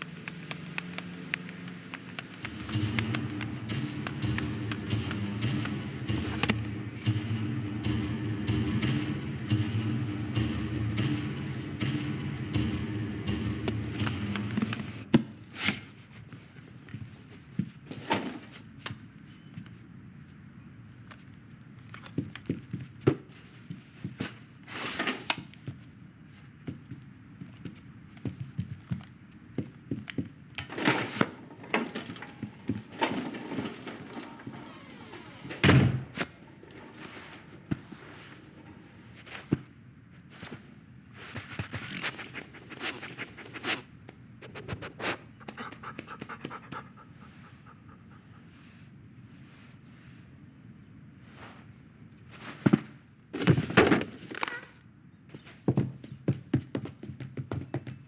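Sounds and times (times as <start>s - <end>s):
low hum: 0.0s - 15.1s.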